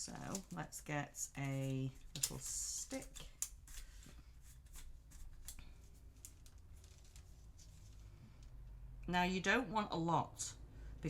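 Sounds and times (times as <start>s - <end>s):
small clicks and light scrapes: 1.4s - 8.6s.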